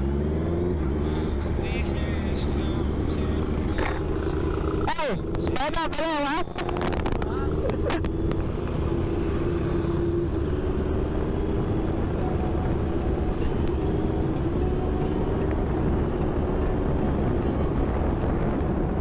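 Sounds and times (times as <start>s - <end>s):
motorcycle engine cruising: 0.0s - 19.0s
wind rush on microphone: 6.5s - 8.7s, 15.1s - 19.0s.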